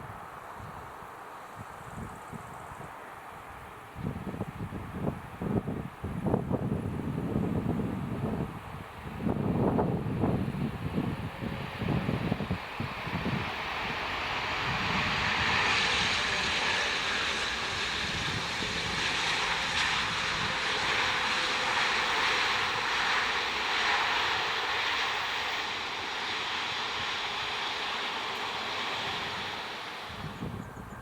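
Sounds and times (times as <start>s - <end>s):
landing jet engine rush: 4.1s - 31.0s.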